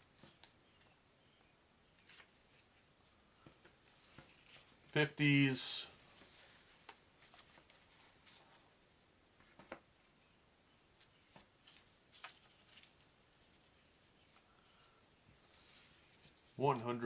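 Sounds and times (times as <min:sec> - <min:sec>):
paper money rustling: 0:11.6 - 0:14.6.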